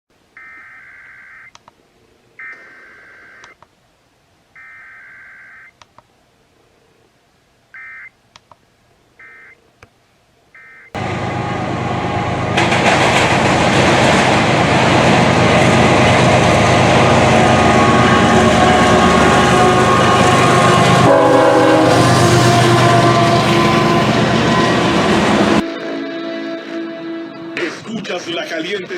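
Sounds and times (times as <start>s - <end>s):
loud sustained two-tone signal: 17.1s - 27.4s.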